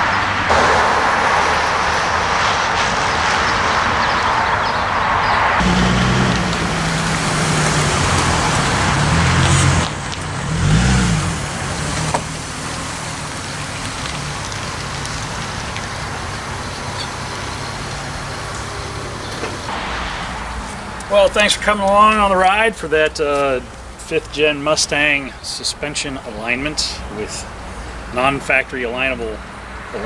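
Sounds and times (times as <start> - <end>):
vehicle engine running and revving: 5.6 - 19.7
steady background hiss: 19.7 - 30.0.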